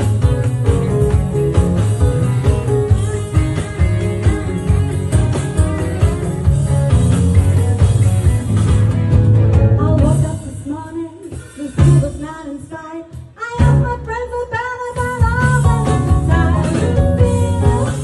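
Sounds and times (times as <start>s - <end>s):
live blues-rock band: 0.0s - 18.0s.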